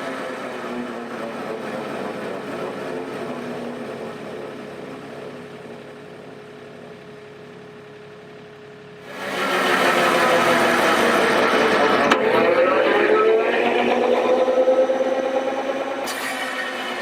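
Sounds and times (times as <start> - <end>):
excavator diesel engine running: 6.4 - 16.0.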